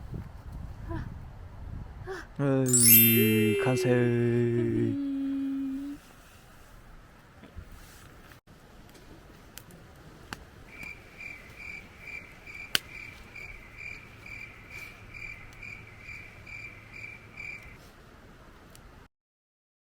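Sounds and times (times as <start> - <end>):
cricket chirping: 10.7 - 17.8.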